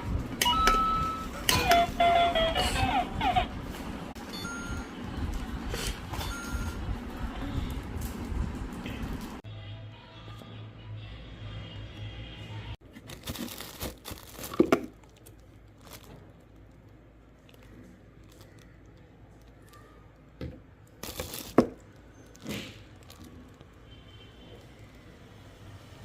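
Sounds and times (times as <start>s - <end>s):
packaging tearing and crinkling: 12.9s - 19.8s, 20.9s - 23.8s
packaging sharp cracks: 12.9s - 19.9s, 20.9s - 23.8s.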